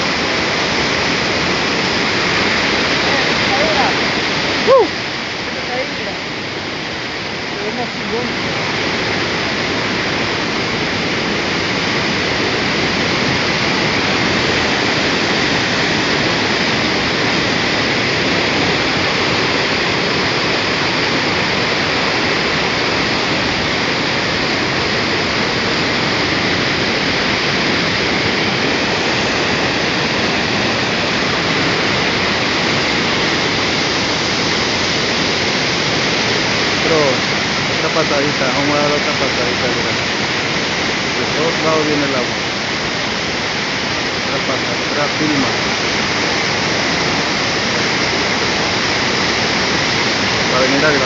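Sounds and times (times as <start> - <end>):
waterfall rushing: 0.0 - 51.0.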